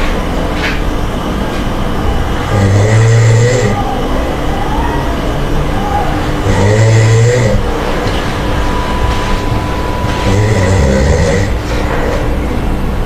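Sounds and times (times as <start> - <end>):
monkey snoring: 2.5 - 3.8, 6.4 - 7.8, 10.1 - 11.9.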